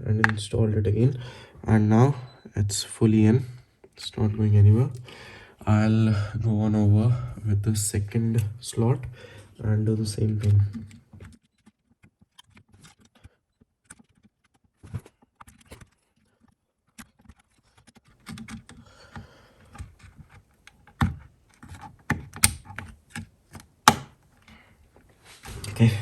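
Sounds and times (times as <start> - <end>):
sharp plastic clicks: 18.2 - 24.6
light plastic taps: 23.9 - 24.6.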